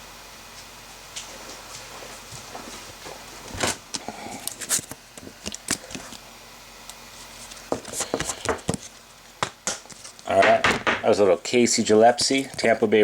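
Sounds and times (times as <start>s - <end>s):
plastic and card rustling: 4.3s - 6.2s, 7.2s - 9.1s, 9.7s - 10.6s.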